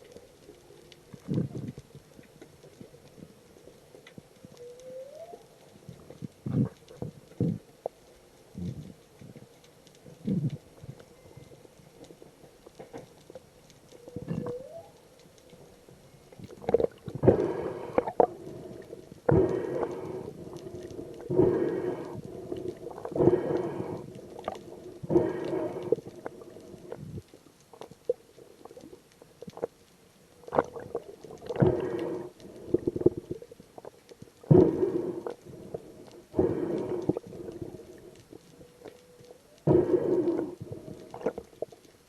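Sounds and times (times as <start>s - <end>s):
faint steady hum: 0.0s - 42.0s
whale calls: 4.5s - 5.5s, 14.0s - 15.1s.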